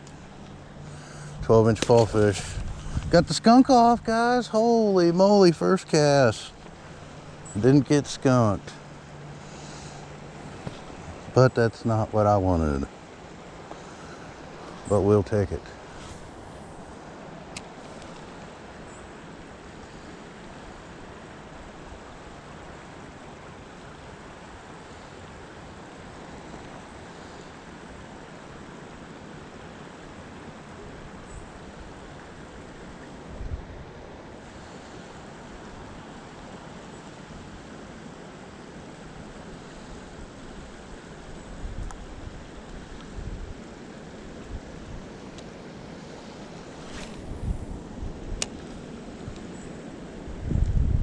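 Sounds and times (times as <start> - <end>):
creek water rushing: 0.0 - 50.6
wind on microphone: 1.4 - 3.3, 43.1 - 43.6, 46.8 - 49.4, 50.3 - 51.0.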